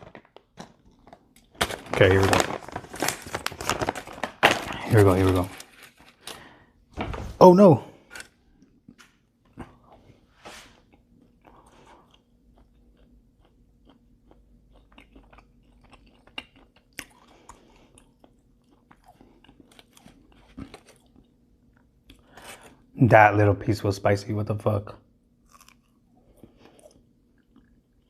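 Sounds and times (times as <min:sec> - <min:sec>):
close-miked chewing: 0:10.8 - 0:22.8, 0:25.4 - 0:28.0.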